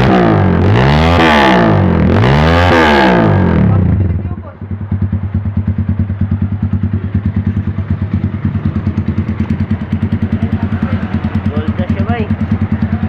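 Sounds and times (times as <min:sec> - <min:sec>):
motorcycle engine idling: 0:03.2 - 0:13.0.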